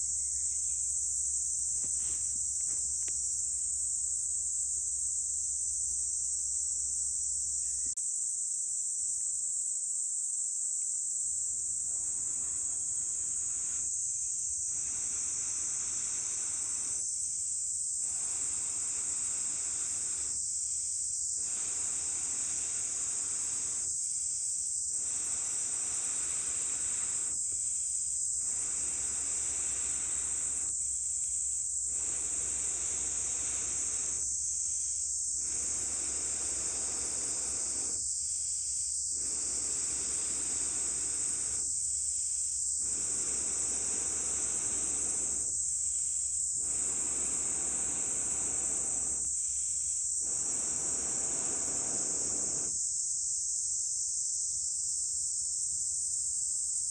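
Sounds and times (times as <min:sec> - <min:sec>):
insects droning: 0:00.0 - 0:56.9
air blown through a pipe: 0:11.8 - 0:14.0, 0:14.6 - 0:17.1, 0:18.0 - 0:20.4, 0:21.4 - 0:24.0, 0:24.9 - 0:27.7, 0:28.3 - 0:30.8, 0:31.8 - 0:34.4, 0:35.3 - 0:38.0, 0:39.1 - 0:41.7, 0:42.8 - 0:45.6, 0:46.6 - 0:49.4, 0:50.2 - 0:52.8.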